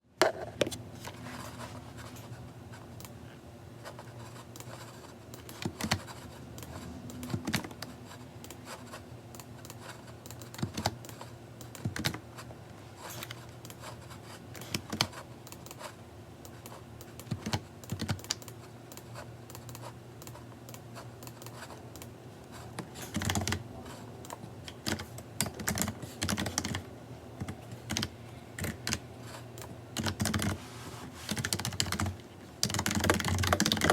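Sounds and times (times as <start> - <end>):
computer keyboard typing: 4.5 - 8.8, 9.4 - 12.2, 13.2 - 15.9, 16.5 - 22.1, 22.9 - 23.6, 24.2 - 29.0, 29.6 - 30.6, 31.3 - 33.9.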